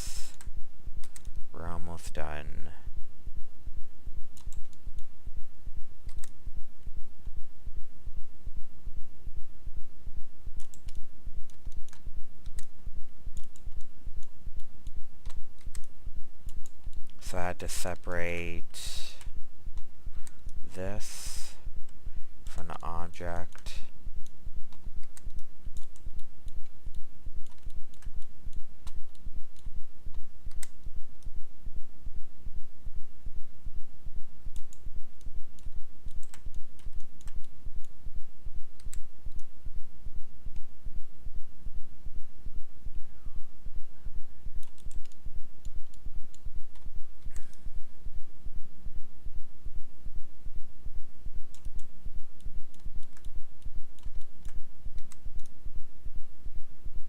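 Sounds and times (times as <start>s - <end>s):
mouse and keyboard clicks: 24.7s - 30.8s, 44.6s - 47.6s, 51.5s - 53.4s, 54.0s - 55.6s
low pulsing throb: 37.6s - 44.6s.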